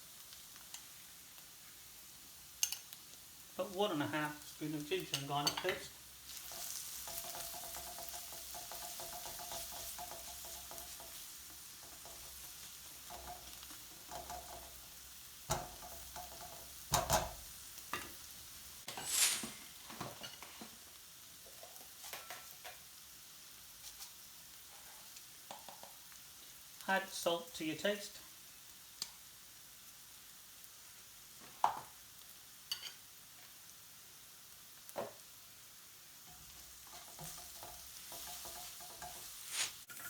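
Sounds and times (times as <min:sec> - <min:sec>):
food sizzling in hot oil: 0:00.0 - 0:40.0
spoon scraping pan: 0:05.0 - 0:18.2, 0:36.3 - 0:40.0
spoon knocking against pan: 0:06.5 - 0:14.8, 0:15.5 - 0:18.2, 0:36.3 - 0:39.3.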